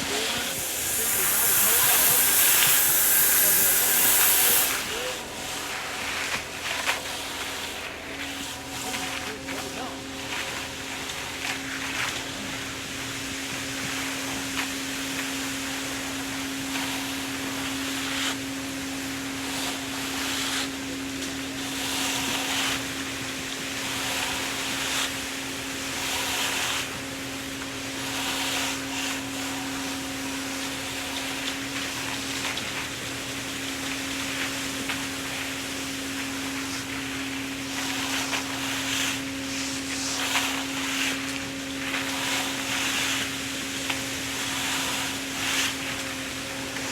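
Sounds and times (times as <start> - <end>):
machine motor running: 0.0 - 11.5, 33.6 - 46.9.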